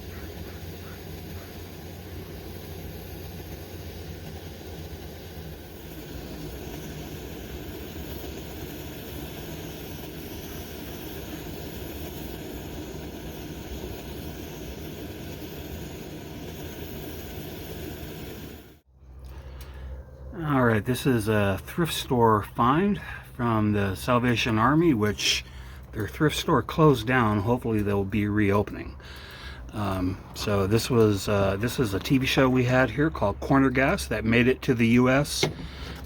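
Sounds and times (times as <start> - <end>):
camp stove burner rushing: 0.0 - 36.0.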